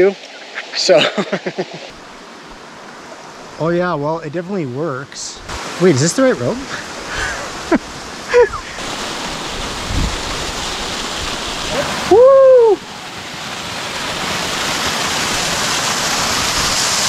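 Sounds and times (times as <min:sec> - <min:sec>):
waterfall rushing: 0:00.0 - 0:03.9, 0:05.4 - 0:17.0
voiced cry: 0:11.7 - 0:12.8.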